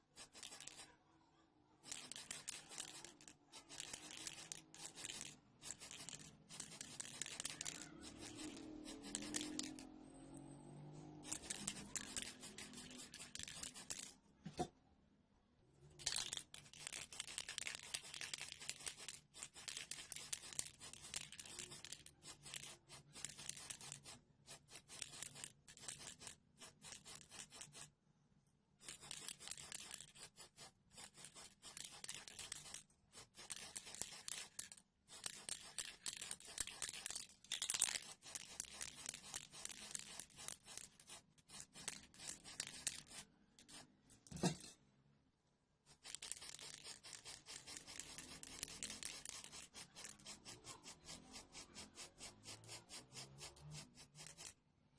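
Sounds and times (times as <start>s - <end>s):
scraping strokes on hard part: 1.8s - 14.7s, 45.9s - 54.6s.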